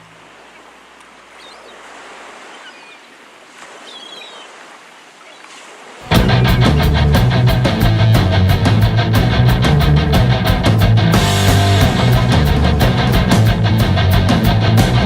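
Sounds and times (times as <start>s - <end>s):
rushing like ocean waves: 0.0s - 15.0s
faint high chirps: 1.3s - 1.8s, 2.5s - 3.1s, 3.8s - 4.5s
heavy metal band playing: 6.1s - 15.0s.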